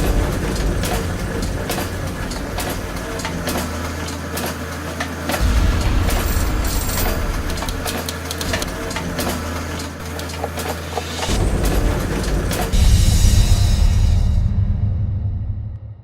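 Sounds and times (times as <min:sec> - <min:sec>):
sharp mechanical ticks: 0:00.0 - 0:13.0
motorcycle engine running: 0:00.0 - 0:14.5.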